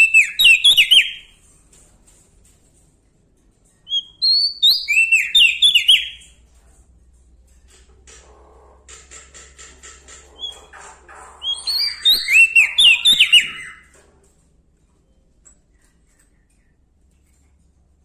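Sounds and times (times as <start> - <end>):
songbird singing: 0.0 - 1.4, 3.9 - 6.3, 10.3 - 14.0.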